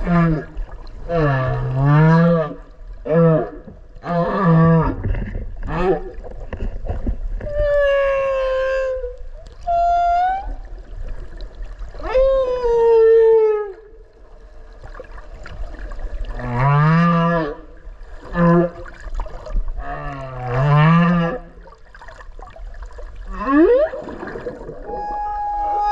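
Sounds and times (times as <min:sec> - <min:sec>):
low rumble of sea: 0:00.0 - 0:25.9
whale song underwater: 0:07.4 - 0:25.9.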